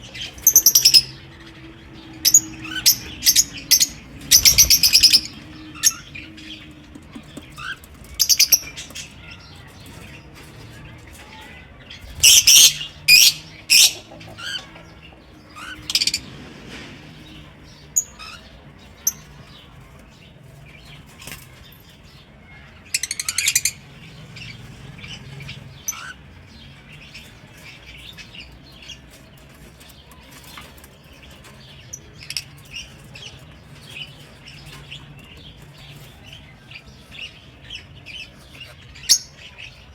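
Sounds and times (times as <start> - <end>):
rapid bird chattering: 0.0 - 10.2, 11.0 - 16.2
lovebirds chirping and calling: 0.0 - 39.9.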